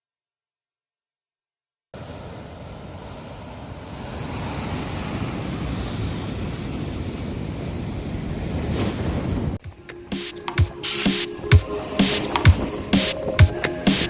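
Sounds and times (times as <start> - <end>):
surf washing on shore: 2.0 - 9.6.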